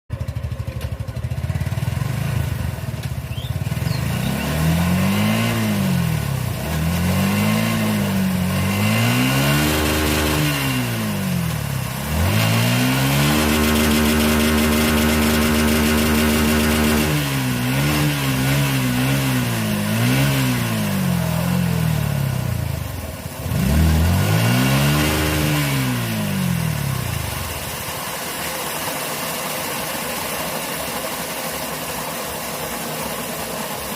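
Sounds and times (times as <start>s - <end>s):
motorcycle engine revving: 0.1s - 33.9s.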